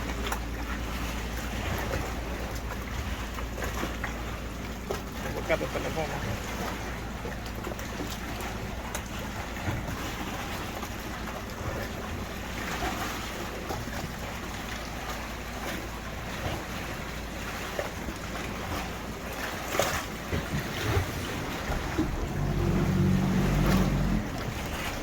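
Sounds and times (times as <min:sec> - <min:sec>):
boat engine droning: 0:00.0 - 0:25.0
short splashes or knocks: 0:00.0 - 0:25.0
water sloshing against boat: 0:00.0 - 0:25.0.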